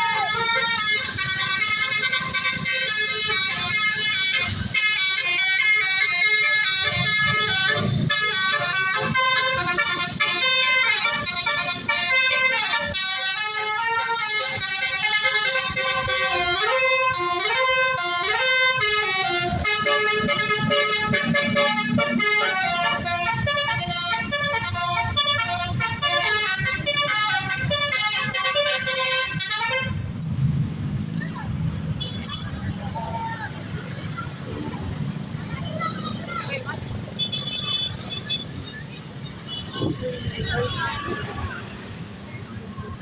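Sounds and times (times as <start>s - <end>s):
musical bus horn melody: 0.0s - 30.2s
low traffic rumble: 0.0s - 43.0s.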